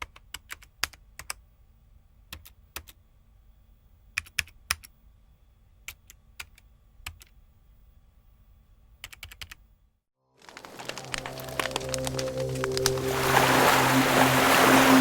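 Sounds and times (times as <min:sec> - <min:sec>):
typing on a keyboard: 0:00.0 - 0:01.4, 0:02.3 - 0:03.0, 0:04.2 - 0:04.9, 0:05.9 - 0:07.4, 0:09.0 - 0:09.6
faint steady hum: 0:01.0 - 0:09.0
music: 0:10.4 - 0:15.0.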